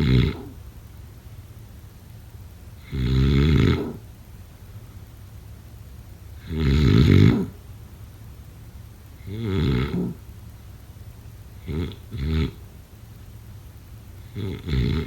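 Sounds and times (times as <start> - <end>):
person snoring: 14.4 - 15.0.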